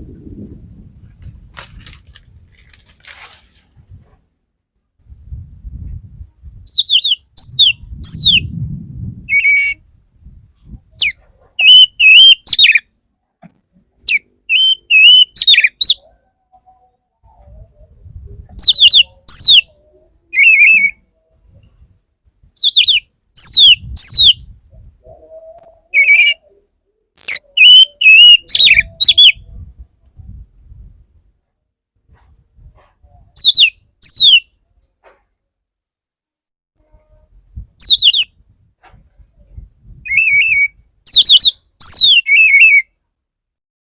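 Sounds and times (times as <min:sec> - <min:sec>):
bird singing whistled phrases: 0:06.7 - 0:08.5, 0:09.3 - 0:09.8, 0:11.0 - 0:12.8, 0:14.0 - 0:16.1, 0:18.6 - 0:19.7, 0:20.3 - 0:21.0, 0:22.6 - 0:24.4, 0:25.4 - 0:26.5, 0:27.2 - 0:29.4, 0:33.4 - 0:34.5, 0:37.8 - 0:38.3, 0:40.1 - 0:42.8.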